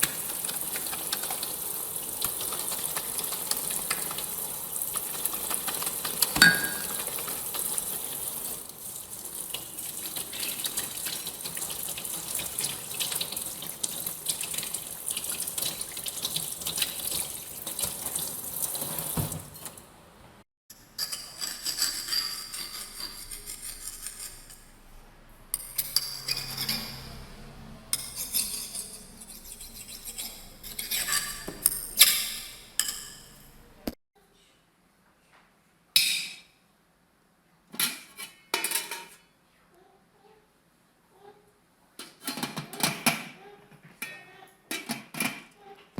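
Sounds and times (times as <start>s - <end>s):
tap running into a sink: 17.8s - 19.8s.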